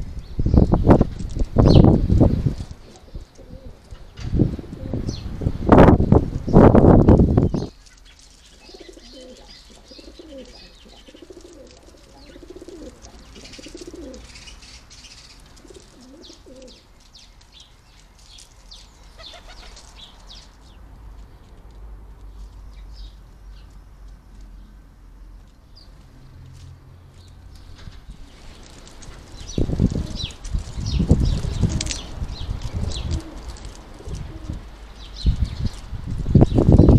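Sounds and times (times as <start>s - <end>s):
songbirds chirping: 0.0s - 36.9s
pigeon cooing: 2.8s - 3.9s, 8.6s - 14.5s, 15.6s - 16.8s, 19.2s - 19.9s, 29.9s - 30.4s, 32.8s - 34.6s.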